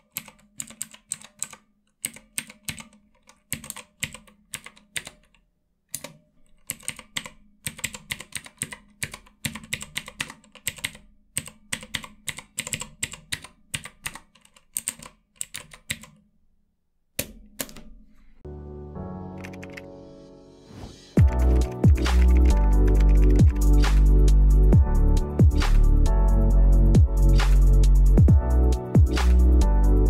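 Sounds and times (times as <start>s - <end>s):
clicky keyboard keys typing: 0.0s - 16.2s, 19.3s - 19.9s, 21.2s - 24.4s, 26.9s - 30.0s.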